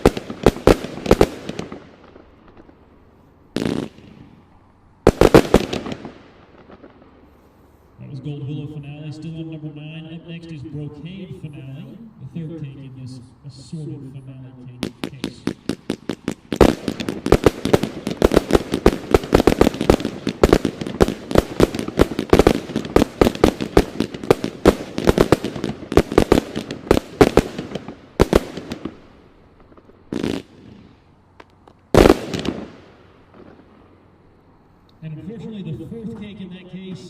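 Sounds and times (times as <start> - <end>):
fireworks firing rapid volley: 0.0 - 2.8, 3.6 - 4.4, 5.1 - 7.2, 14.7 - 31.0, 31.9 - 33.7
firework bursts: 0.0 - 37.0.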